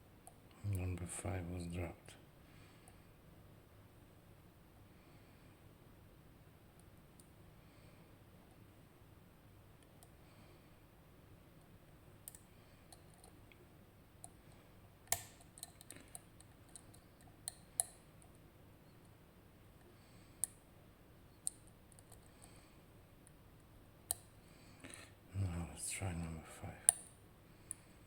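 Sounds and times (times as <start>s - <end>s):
lock pick metallic clicks: 15.0s - 18.0s.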